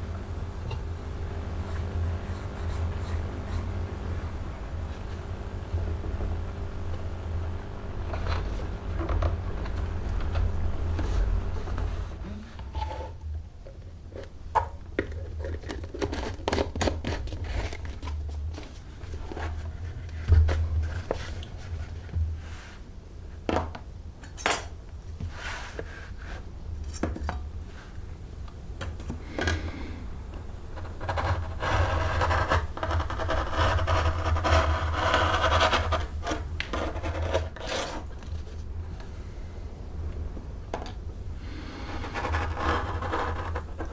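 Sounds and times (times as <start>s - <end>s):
steady low hum: 0.0s - 43.9s
scraping leather: 30.7s - 38.2s, 41.4s - 43.9s.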